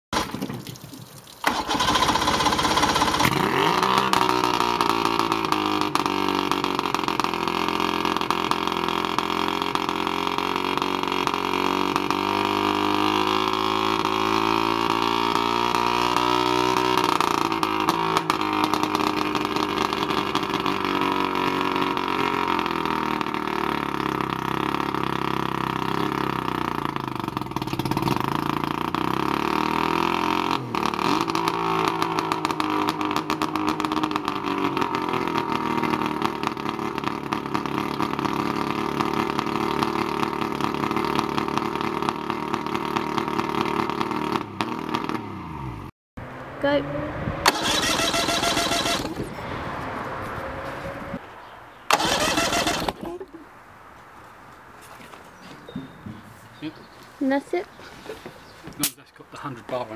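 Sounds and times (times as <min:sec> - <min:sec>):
outboard motor running: 0:01.4 - 0:15.1, 0:16.0 - 0:45.2.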